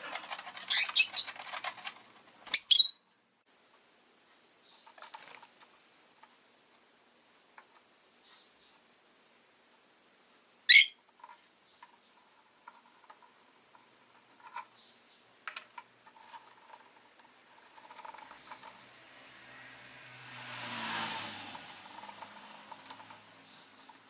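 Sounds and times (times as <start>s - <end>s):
bird chirping: 0.2s - 1.8s, 2.4s - 3.0s, 4.4s - 5.2s, 8.0s - 8.8s, 10.7s - 12.4s, 14.4s - 15.4s, 17.7s - 19.8s, 21.9s - 24.0s
vehicle passing: 17.8s - 24.0s.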